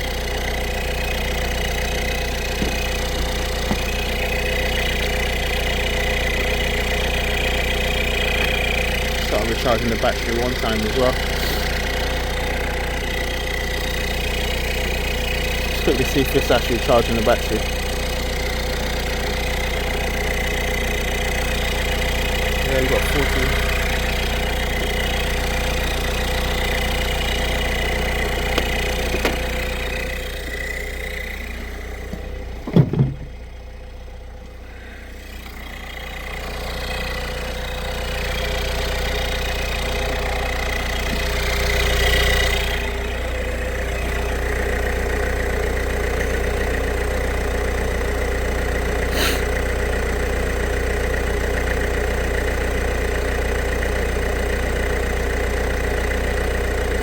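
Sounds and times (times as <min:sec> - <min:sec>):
diesel engine idling: 0:00.0 - 0:57.0
sharp knocks: 0:02.6 - 0:02.8, 0:03.6 - 0:03.9, 0:28.5 - 0:29.5, 0:32.1 - 0:33.4.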